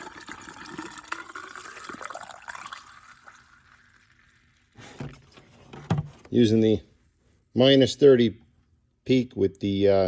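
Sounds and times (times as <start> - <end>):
fluid pouring from a jug: 0.0 - 5.3.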